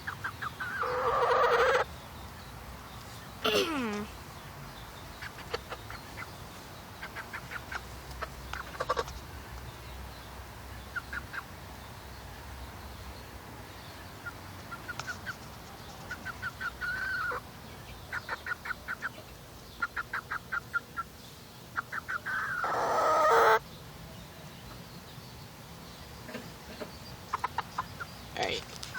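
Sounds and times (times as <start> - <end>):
hen clucking: 0.0 - 1.9, 5.1 - 6.4, 7.0 - 9.2, 14.2 - 17.5, 18.1 - 21.1, 21.8 - 23.6, 26.2 - 28.9
hen drawn-out call: 22.2 - 23.6.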